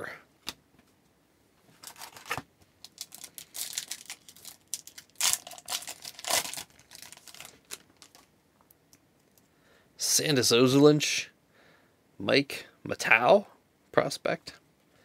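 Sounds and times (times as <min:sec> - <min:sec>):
card pack wrapper crinkling: 0:01.8 - 0:08.3
cards rustling: 0:01.8 - 0:08.3.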